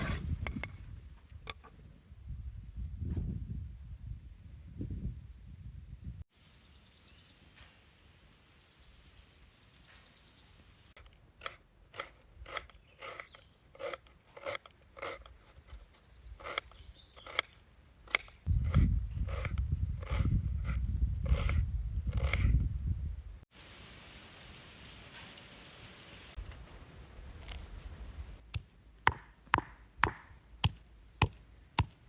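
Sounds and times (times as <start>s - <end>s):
blade chopping crunchy pods: 11.0s - 22.6s, 28.4s - 32.0s.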